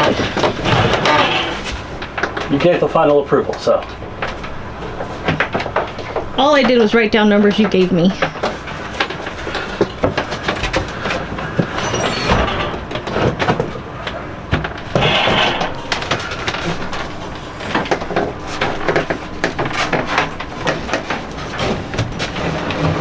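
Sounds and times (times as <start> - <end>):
appliance scraping into cabinet: 9.4 - 13.8.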